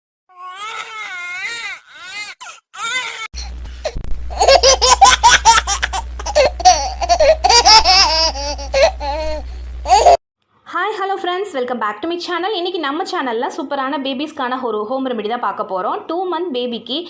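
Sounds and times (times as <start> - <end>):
baby crying: 0.3 - 10.2
baby laughing and squealing: 0.4 - 10.2
steady low hum: 3.4 - 10.2.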